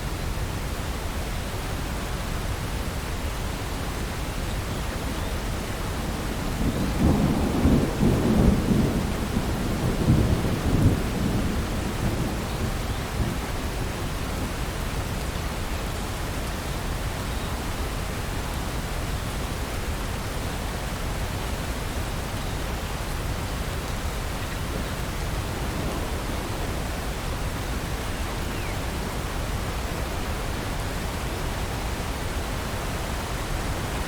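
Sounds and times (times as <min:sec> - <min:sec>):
steady rain falling: 0:00.0 - 0:34.0
low rumble of thunder: 0:05.8 - 0:15.8, 0:23.0 - 0:34.0.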